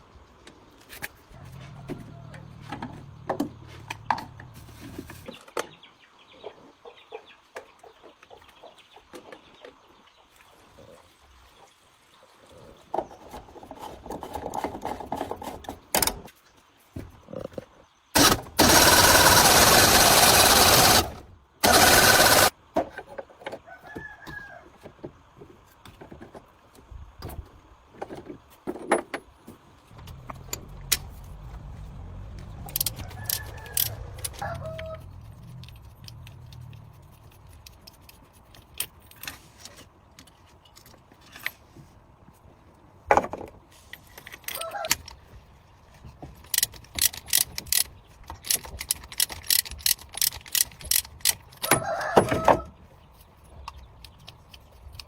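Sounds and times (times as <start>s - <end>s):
low hum: 30.0s - 37.9s.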